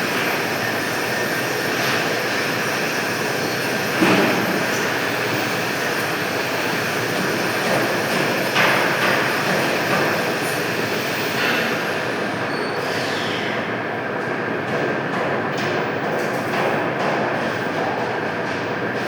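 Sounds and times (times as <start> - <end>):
pipe-cutting machine running: 0.0 - 12.2.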